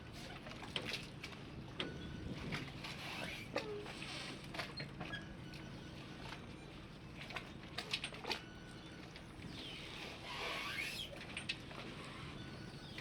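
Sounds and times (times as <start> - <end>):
brief high squeaks: 9.6 - 11.2.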